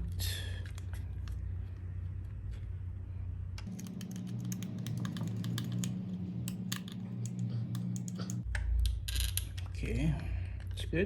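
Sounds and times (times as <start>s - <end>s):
steady low hum: 0.0s - 9.0s
hand tools clicking and tapping: 3.6s - 8.5s.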